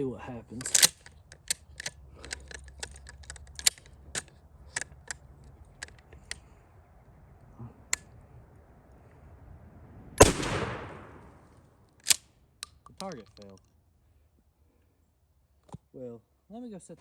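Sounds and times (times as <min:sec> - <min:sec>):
sharp clicks and taps: 0:00.6 - 0:06.4
shotgun blast with echo: 0:10.2 - 0:11.4.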